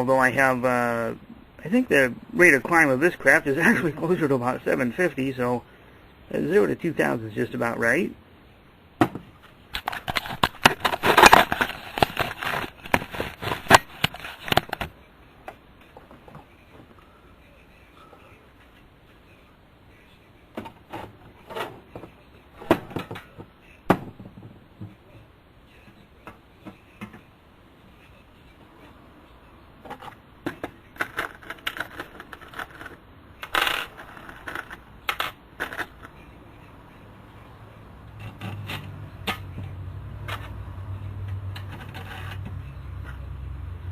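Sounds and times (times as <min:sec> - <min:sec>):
clicks and knocks of handling: 0:09.1 - 0:16.9
crinkling: 0:09.7 - 0:14.9.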